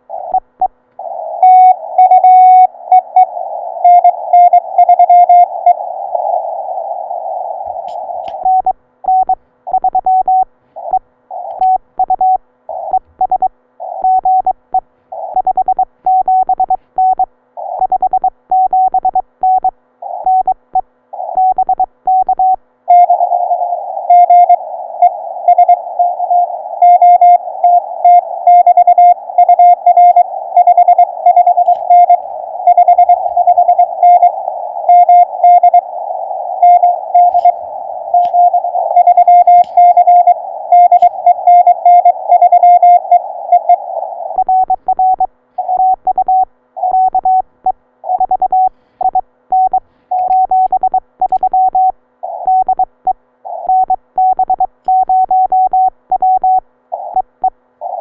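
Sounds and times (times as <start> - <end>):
morse code tones: 1.4 - 5.8, 7.7 - 23.3, 24.1 - 58.0
radio band hiss: 5.9 - 8.4, 31.4 - 44.4.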